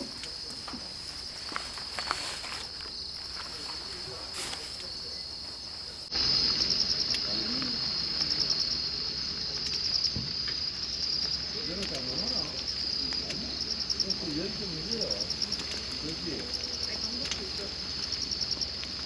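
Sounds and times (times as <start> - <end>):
insects trilling: 0.0 - 19.0.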